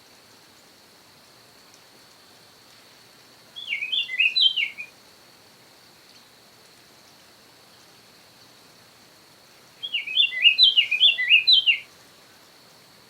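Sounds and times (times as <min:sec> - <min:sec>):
faint high-pitched whine: 0:00.0 - 0:13.0
bird singing chirpy phrase: 0:03.6 - 0:04.9, 0:09.8 - 0:11.8.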